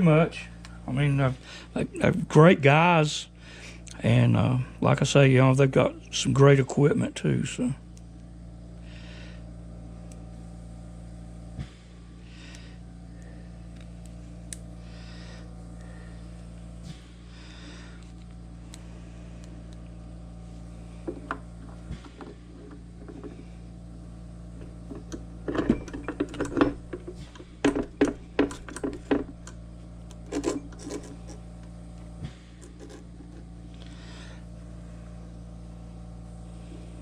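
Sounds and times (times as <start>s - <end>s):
steady low hum: 0.0s - 37.0s
small metal parts clinking: 30.2s - 31.4s, 32.6s - 33.4s.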